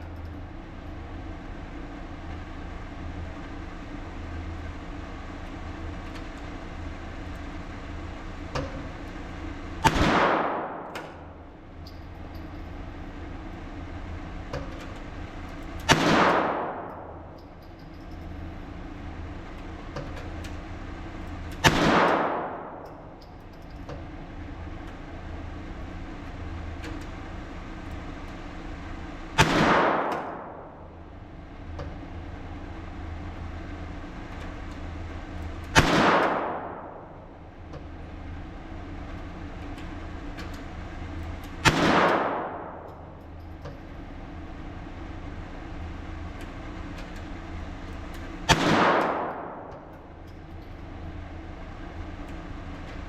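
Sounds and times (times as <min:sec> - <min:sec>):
low hum: 0:00.0 - 0:53.0
rifle shots with echo: 0:09.8 - 0:11.5, 0:15.8 - 0:17.4, 0:21.6 - 0:23.2, 0:29.4 - 0:31.1, 0:35.7 - 0:37.4, 0:41.6 - 0:43.2, 0:48.4 - 0:50.1.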